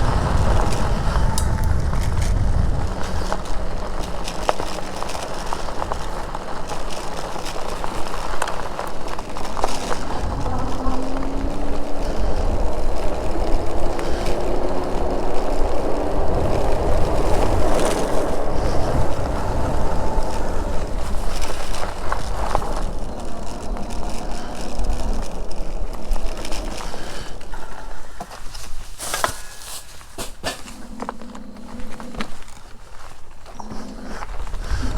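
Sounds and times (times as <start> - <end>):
faint electric motor whine: 0.0 - 30.1
tyre noise: 0.0 - 34.9
wind rumbling on microphone: 0.0 - 34.9.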